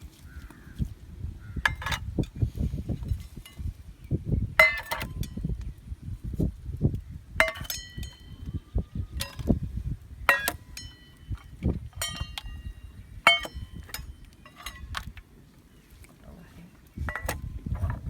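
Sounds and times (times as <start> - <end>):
metal striking metal: 10.3 - 11.2, 13.3 - 14.8
dull low thuds: 17.0 - 18.0.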